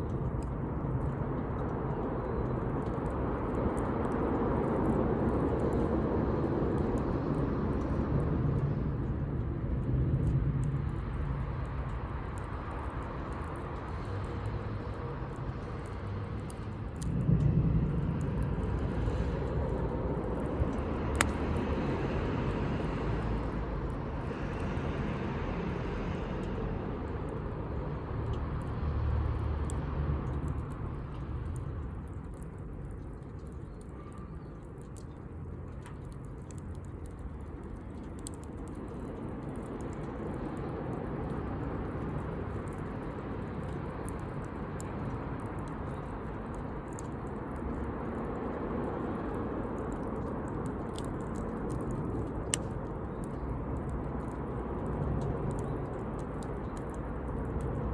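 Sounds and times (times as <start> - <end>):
campfire crackling: 0.0 - 57.9
steady low rumble: 0.0 - 57.9.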